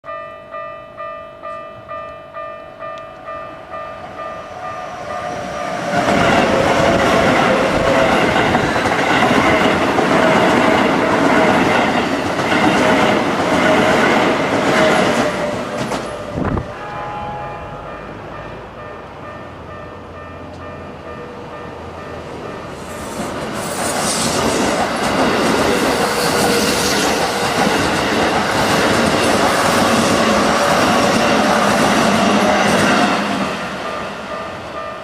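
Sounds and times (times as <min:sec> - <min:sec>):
level crossing bell ringing: 0:00.0 - 0:05.9, 0:16.2 - 0:22.7
train wheels clattering on rails: 0:05.0 - 0:16.6, 0:22.2 - 0:34.8.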